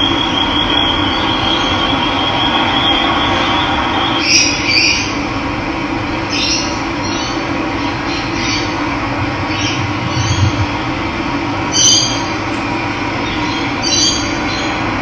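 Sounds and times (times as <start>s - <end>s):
short bird calls: 11.7s - 14.0s.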